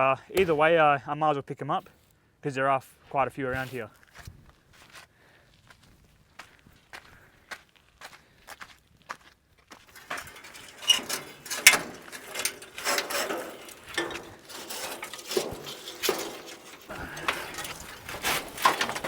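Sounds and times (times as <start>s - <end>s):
scrap metal clinking and scraping: 9.9s - 19.0s.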